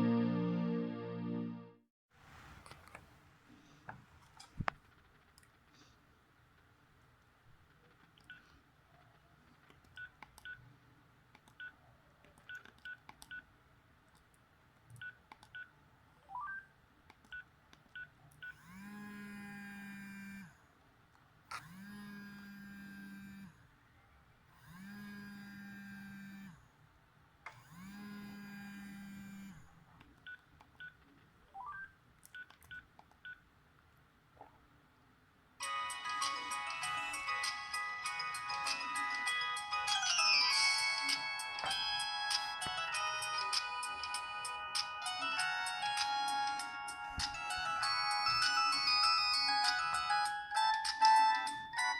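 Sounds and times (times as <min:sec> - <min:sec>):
phone key beeps and clicks: 0:31.6 - 0:33.4.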